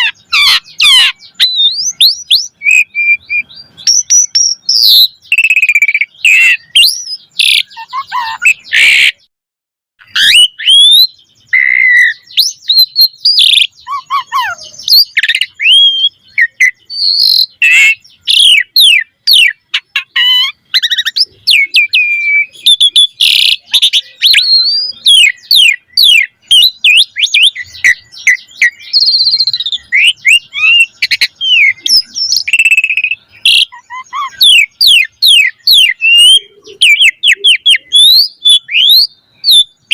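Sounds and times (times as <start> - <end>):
starling singing varied song: 0.0 - 9.2, 10.0 - 39.9.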